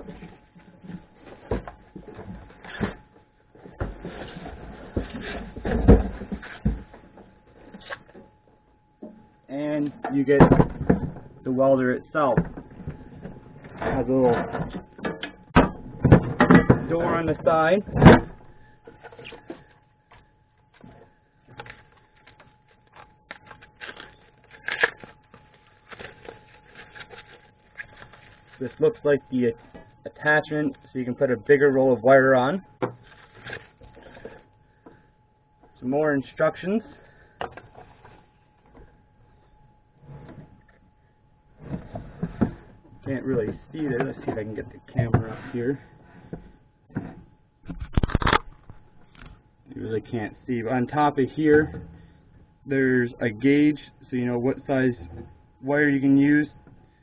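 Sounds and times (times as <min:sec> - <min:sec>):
packaging rustling: 0:21.6 - 0:28.9, 0:33.0 - 0:34.4.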